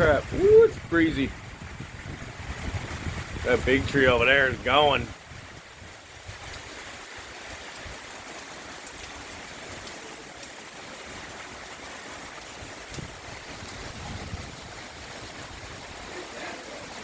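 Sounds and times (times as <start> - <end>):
wind buffeting microphone: 0.0 - 8.1, 11.2 - 17.0
heavy rain and wind hiss: 0.0 - 17.0.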